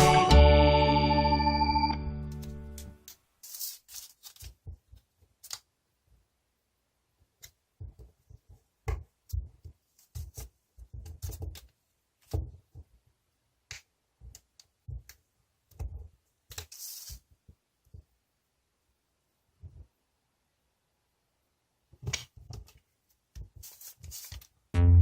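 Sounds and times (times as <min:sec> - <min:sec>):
paper crinkling and tapping: 0:03.1 - 0:05.6
paper sliding rustle: 0:03.4 - 0:04.6, 0:23.6 - 0:24.5.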